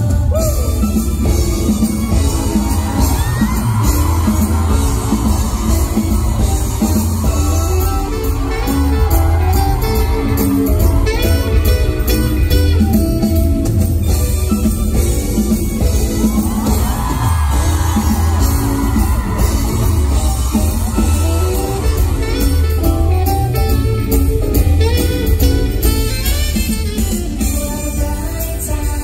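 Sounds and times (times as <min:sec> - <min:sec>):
loud music with guitar: 0:00.0 - 0:29.0.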